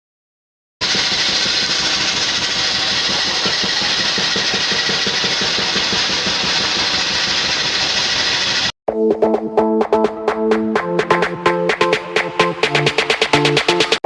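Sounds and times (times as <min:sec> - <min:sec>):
small engine rattling: 0:00.8 - 0:08.7.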